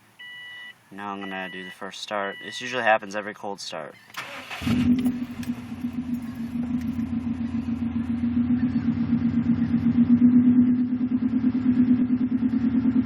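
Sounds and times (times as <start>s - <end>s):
car engine rough idle: 4.5s - 13.0s.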